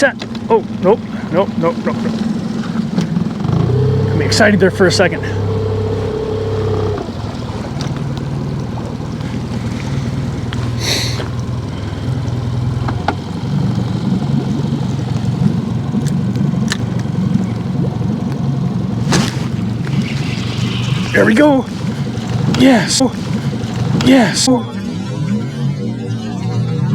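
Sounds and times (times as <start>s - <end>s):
outboard motor idling: 0.0s - 26.9s.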